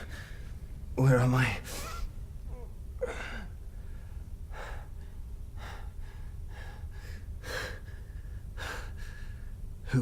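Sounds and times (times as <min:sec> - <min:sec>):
low steady hum: 0:00.0 - 0:10.0
man breathing hard: 0:03.0 - 0:09.7.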